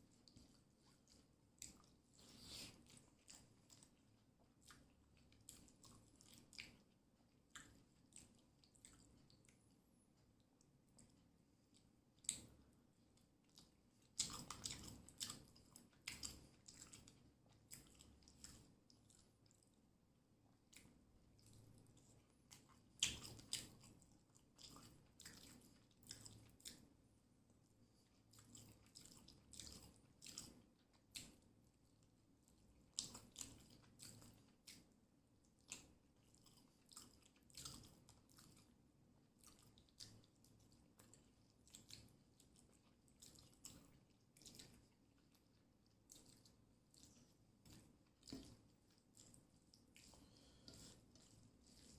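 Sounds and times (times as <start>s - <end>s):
person chewing food: 0.0s - 19.8s, 20.6s - 51.9s
wet mouth clicks and smacks: 0.2s - 2.0s, 4.6s - 9.7s, 10.6s - 12.7s, 13.4s - 19.8s, 20.7s - 26.9s, 28.1s - 31.5s, 32.9s - 34.9s, 39.4s - 51.9s
person chewing and biting food: 35.6s - 38.7s, 41.0s - 51.9s.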